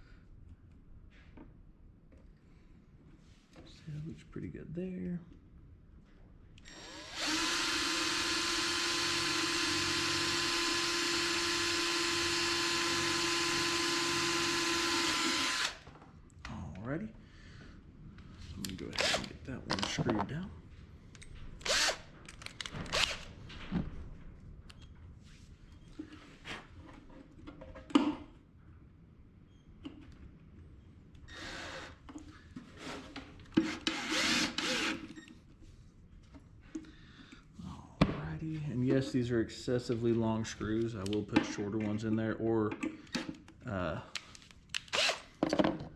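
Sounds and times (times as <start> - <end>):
power drill motor whine: 6.6 - 15.8, 19.0 - 19.3, 21.6 - 22.1, 22.9 - 23.3, 33.9 - 35.1, 44.9 - 45.3.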